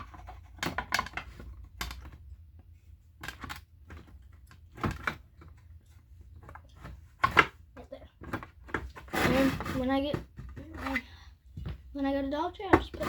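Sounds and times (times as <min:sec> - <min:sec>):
plastic clicks and knocks: 0:00.0 - 0:02.3, 0:03.2 - 0:05.6.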